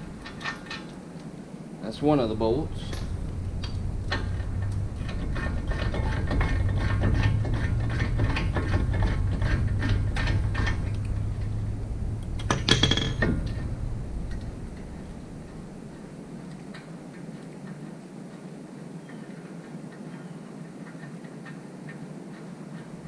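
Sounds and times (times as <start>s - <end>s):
steady low hum: 0.0s - 23.0s
sharp metallic clink: 2.8s - 3.2s.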